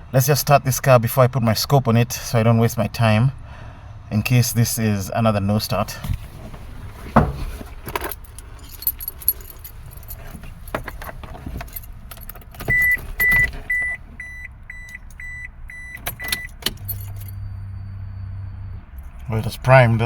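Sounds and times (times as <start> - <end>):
car keys jangling: 5.8 - 14.2, 14.8 - 15.3, 15.9 - 17.4
short electronic beeps: 12.7 - 16.6.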